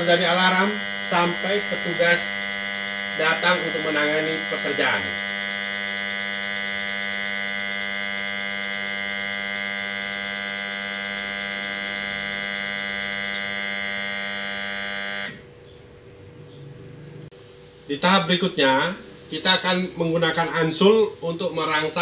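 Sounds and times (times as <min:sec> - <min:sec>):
fast-pulsing high beep: 0:00.0 - 0:14.2
steady electric buzz: 0:00.0 - 0:22.0.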